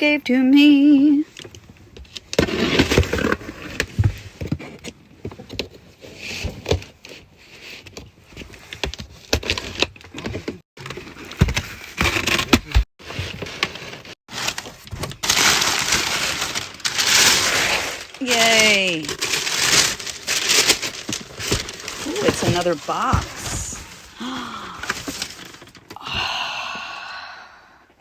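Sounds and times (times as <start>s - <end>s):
paper rustling: 10.8s - 25.9s.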